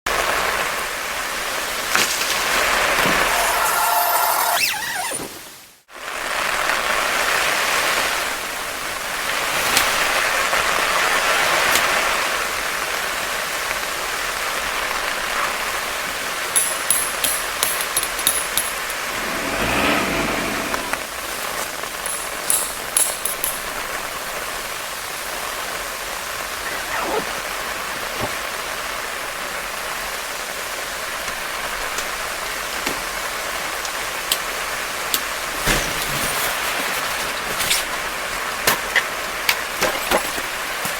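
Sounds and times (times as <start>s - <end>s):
whoosh: 19.0s - 21.3s
heavy rain hissing: 19.0s - 22.3s.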